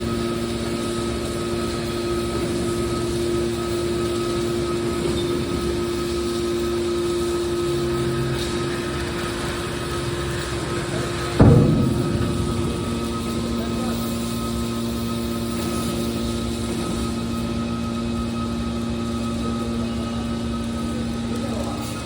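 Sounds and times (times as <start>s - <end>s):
baler press machine hum: 10.8s - 15.4s.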